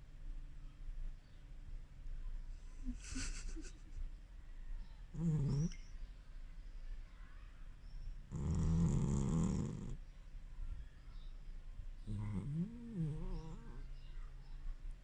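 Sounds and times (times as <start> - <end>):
pet snoring: 5.1 - 5.8, 8.3 - 10.0, 12.1 - 13.8.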